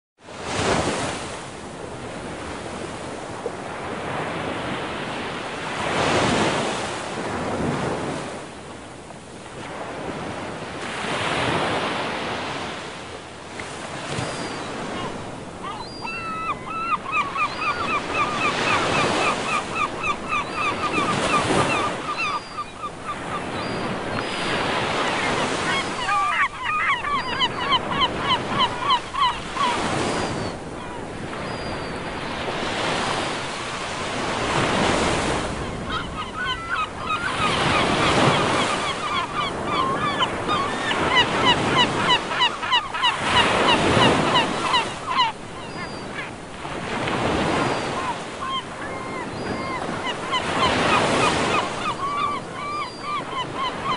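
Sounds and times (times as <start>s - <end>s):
sea waves breaking: 0.3s - 53.9s
gulls calling: 14.0s - 33.8s, 34.4s - 53.9s.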